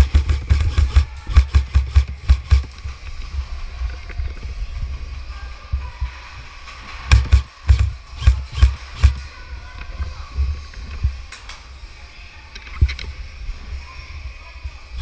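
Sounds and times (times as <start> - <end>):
airsoft gun shots: 0.0 - 2.9, 7.0 - 9.3
rumbling microphone movement noise: 0.0 - 15.0.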